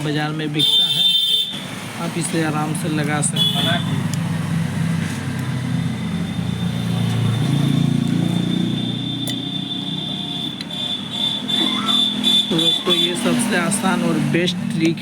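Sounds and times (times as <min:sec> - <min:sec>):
engine humming: 0:01.7 - 0:15.0.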